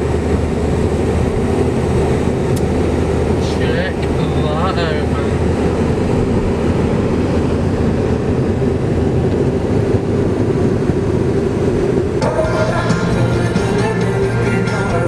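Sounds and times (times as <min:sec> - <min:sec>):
car road and engine noise: 0:00.0 - 0:15.0
music: 0:12.2 - 0:15.0.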